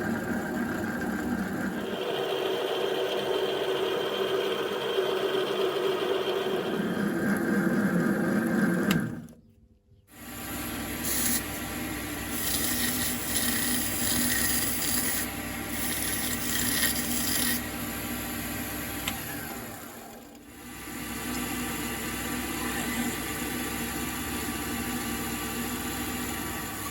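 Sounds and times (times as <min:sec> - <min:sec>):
power tool motor hum: 0:10.2 - 0:17.8.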